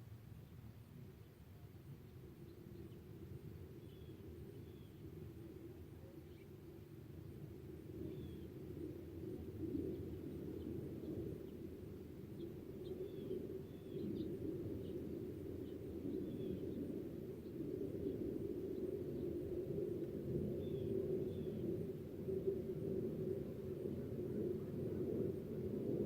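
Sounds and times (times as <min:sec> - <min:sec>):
small birds chirping: 0:03.8 - 0:05.1, 0:08.0 - 0:08.5, 0:12.3 - 0:19.4.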